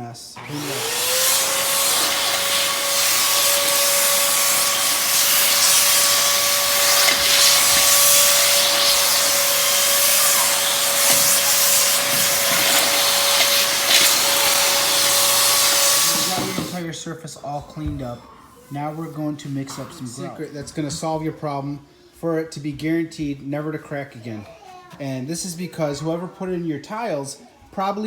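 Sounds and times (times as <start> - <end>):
vacuum cleaner whining: 0.4 - 16.8.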